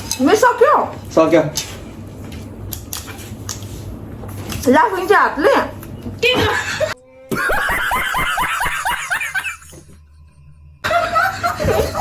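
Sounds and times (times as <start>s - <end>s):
woman giggling: 10.9s - 12.0s.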